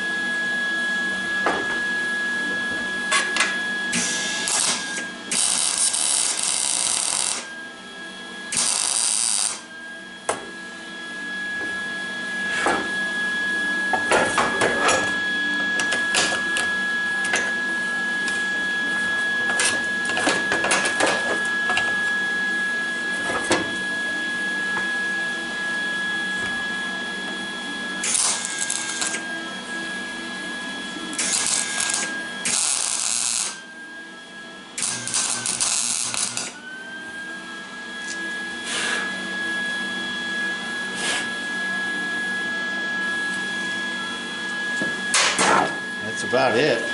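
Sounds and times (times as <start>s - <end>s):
arc welding crackling: 4.0s - 7.5s, 8.5s - 9.6s, 28.0s - 29.2s, 31.1s - 33.6s, 34.8s - 36.6s.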